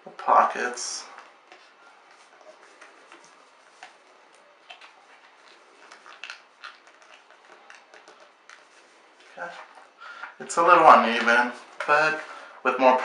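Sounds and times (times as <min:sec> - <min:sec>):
paper crinkling: 0:01.0 - 0:09.9.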